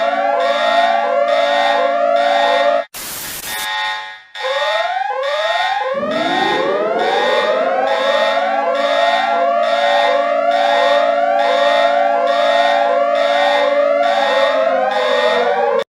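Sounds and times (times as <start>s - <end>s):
rising whooping alarm tones: 0.0s - 2.9s, 4.4s - 15.9s
low siren tone winding up: 4.4s - 15.8s.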